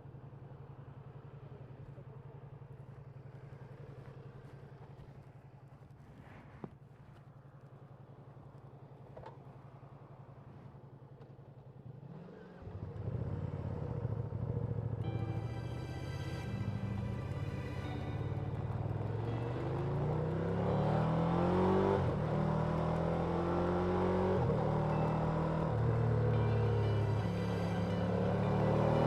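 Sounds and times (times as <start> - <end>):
motorcycle engine running: 16.9 - 29.0.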